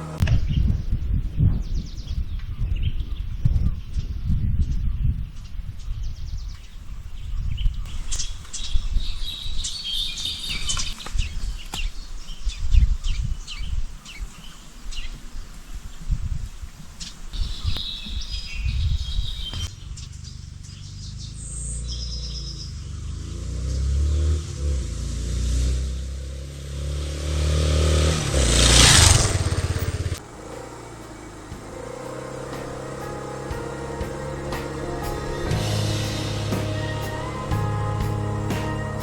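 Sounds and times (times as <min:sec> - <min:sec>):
birds chirping: 0:00.0 - 0:24.3, 0:27.9 - 0:39.0
motorcycle engine hum: 0:00.0 - 0:39.0
low rumble: 0:24.5 - 0:39.0.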